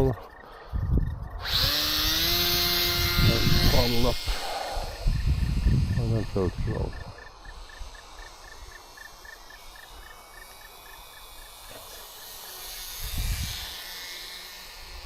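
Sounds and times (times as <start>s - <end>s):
cricket chirping: 0.0s - 1.5s, 4.4s - 12.6s.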